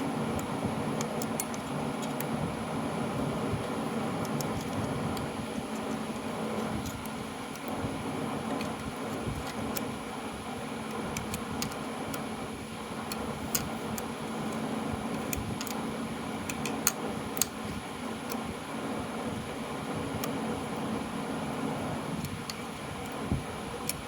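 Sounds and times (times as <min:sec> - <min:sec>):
steady fan-like hum: 0:00.0 - 0:24.0
parts being handled: 0:00.2 - 0:10.0, 0:13.0 - 0:18.4.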